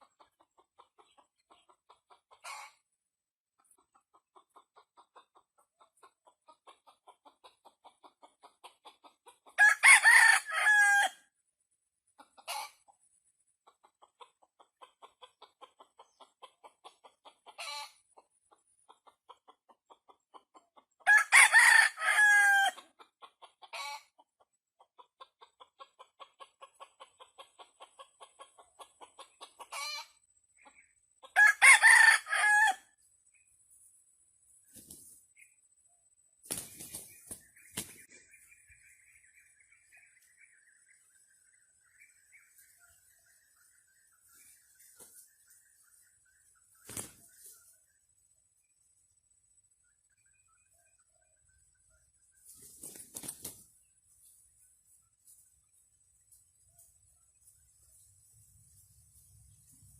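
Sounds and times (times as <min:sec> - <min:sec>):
soft rapid clucking: 0:00.0 - 0:09.6, 0:12.1 - 0:21.0, 0:22.9 - 0:31.3
rooster crowing: 0:09.6 - 0:11.2, 0:21.0 - 0:22.8, 0:31.4 - 0:32.9.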